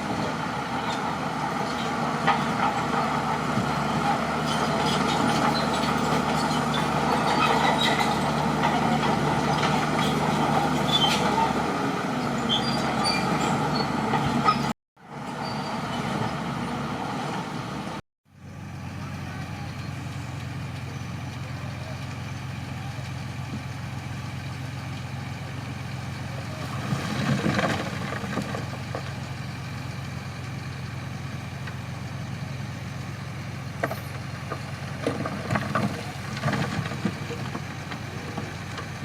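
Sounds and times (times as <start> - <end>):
bulldozer diesel engine running: 0.0 - 39.0.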